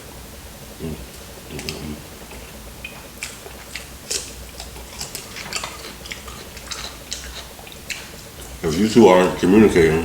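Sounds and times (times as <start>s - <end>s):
person chewing food: 0.8s - 10.0s.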